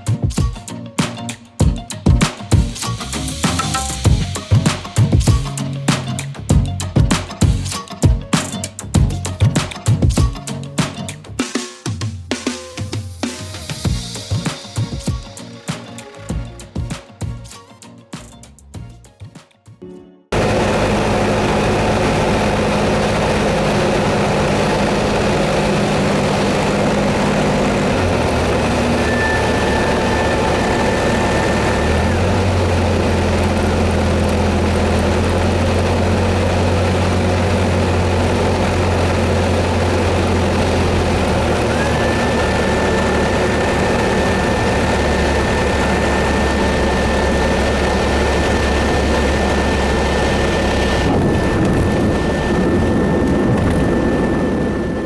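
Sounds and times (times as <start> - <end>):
loud engine drone: 20.3 - 55.0
thin high whine: 20.3 - 55.0.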